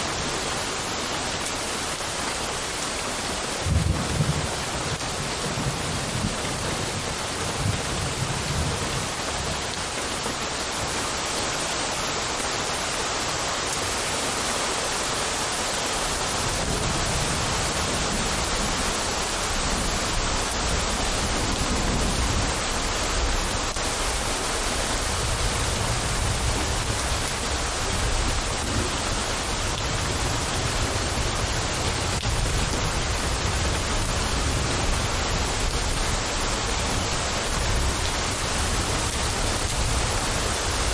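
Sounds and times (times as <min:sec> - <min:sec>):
rain hissing: 0:00.0 - 0:40.9
distant thunder rumble: 0:03.6 - 0:09.8, 0:16.3 - 0:40.9.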